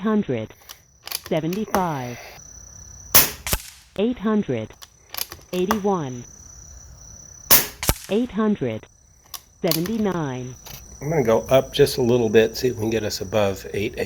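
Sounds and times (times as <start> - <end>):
rifle click: 0.6 - 2.0, 3.2 - 3.9, 4.8 - 5.8, 7.5 - 8.3, 9.3 - 10.1
air rifle shots: 3.1 - 4.0, 7.5 - 8.3.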